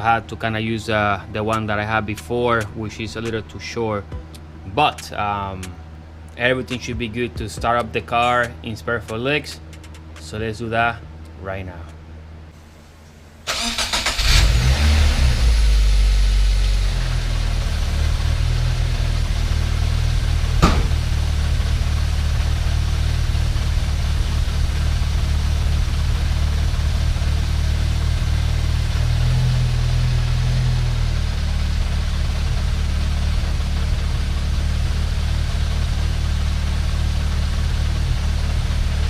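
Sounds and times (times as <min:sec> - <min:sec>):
car engine idling: 0:00.0 - 0:39.0
sharp click: 0:20.6 - 0:21.0.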